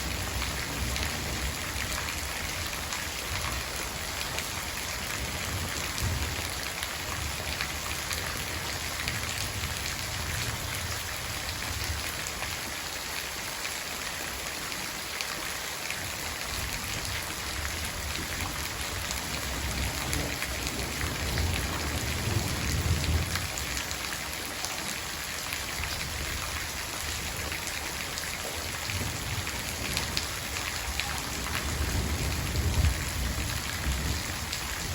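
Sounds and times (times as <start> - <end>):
rain pattering: 0.0 - 34.9.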